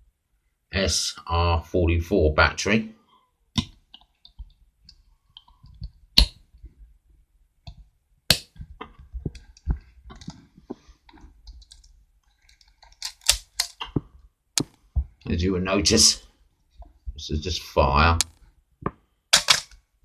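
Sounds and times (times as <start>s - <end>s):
camera clicks and rattles: 8.3s - 10.5s, 11.1s - 14.8s, 19.3s - 19.8s.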